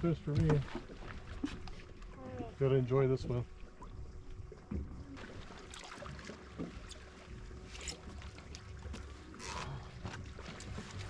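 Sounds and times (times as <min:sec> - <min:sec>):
water slapping against boat hull: 0:00.0 - 0:02.0, 0:04.6 - 0:07.1
water splashing: 0:00.0 - 0:11.0.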